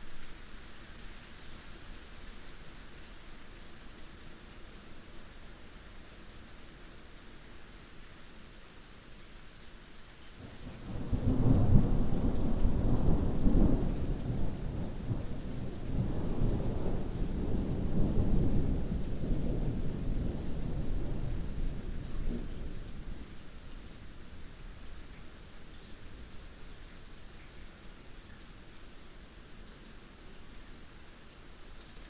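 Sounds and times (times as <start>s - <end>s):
heavy rain: 0.0s - 32.0s
thunder rumbling: 10.5s - 23.7s.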